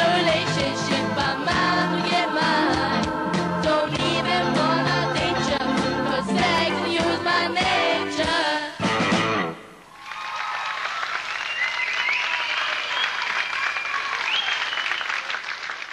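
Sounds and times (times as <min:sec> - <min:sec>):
pop song with singing and band: 0:00.0 - 0:09.0
audience applauding: 0:09.9 - 0:15.9.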